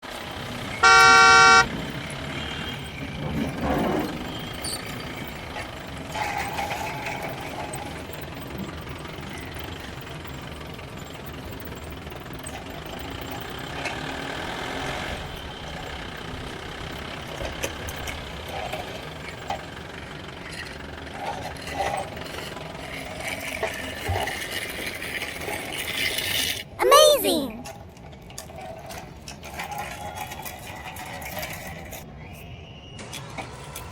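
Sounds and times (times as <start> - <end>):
vehicle noise: 0.0 - 26.8
horn toot: 0.8 - 1.7.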